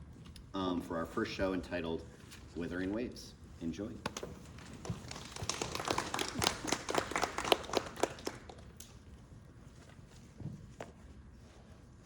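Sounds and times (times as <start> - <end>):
small audience clapping: 4.2 - 9.0.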